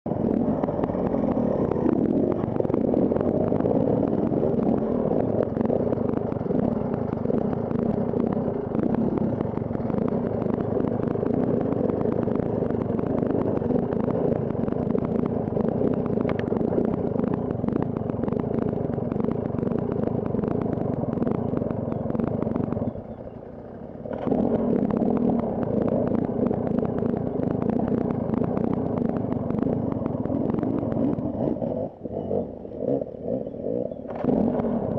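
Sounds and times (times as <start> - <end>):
motorcycle engine running: 0.0 - 34.9
motorcycle clatter: 0.1 - 32.0.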